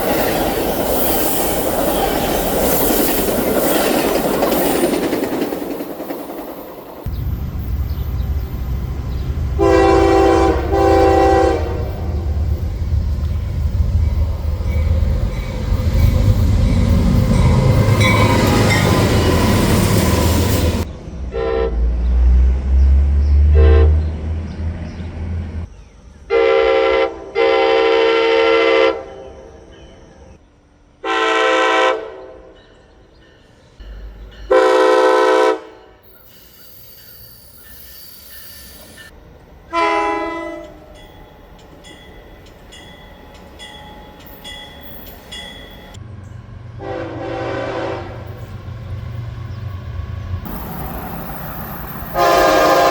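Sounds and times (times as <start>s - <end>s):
train rumbling by: 0.0s - 52.9s
locomotive air horn: 9.5s - 12.4s, 21.3s - 22.0s, 23.5s - 24.2s, 26.3s - 29.2s, 31.0s - 32.5s, 34.5s - 36.0s, 39.7s - 40.8s, 46.8s - 48.5s, 52.1s - 52.9s.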